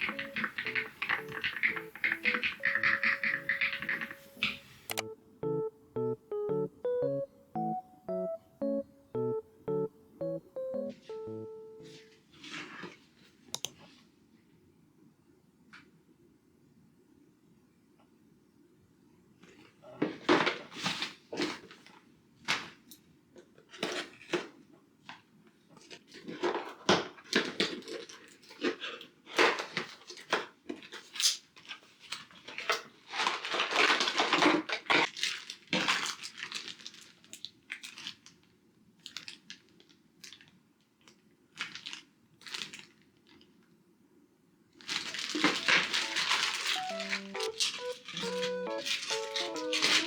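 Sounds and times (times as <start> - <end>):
rustling and crinkling: 44.8 - 50.0.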